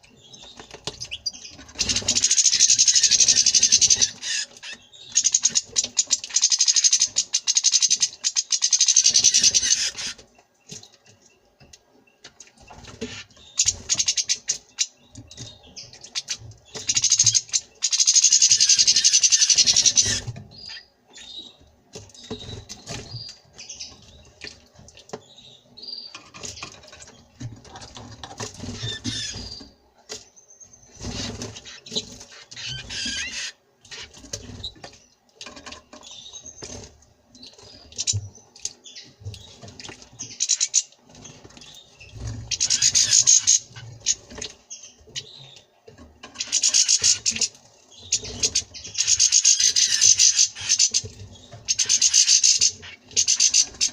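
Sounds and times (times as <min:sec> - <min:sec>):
bird chirps and calls: 0:00.3 - 0:10.3, 0:12.9 - 0:21.6, 0:27.9 - 0:29.8, 0:30.4 - 0:34.8, 0:37.4 - 0:53.9.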